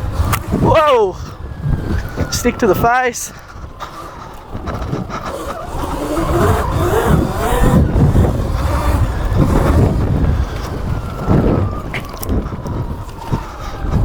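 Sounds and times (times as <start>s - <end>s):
rumble of chain tyres and wind: 0.0s - 14.0s
electric motor whine: 3.8s - 12.3s.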